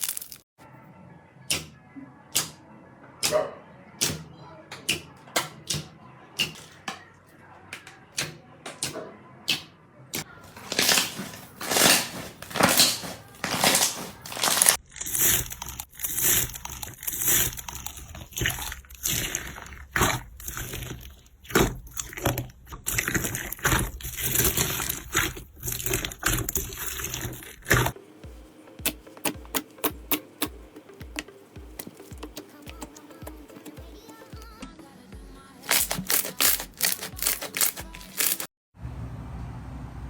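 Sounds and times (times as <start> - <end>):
slime clicking and squishing: 10.2 - 28.0, 28.8 - 34.5, 35.6 - 38.5.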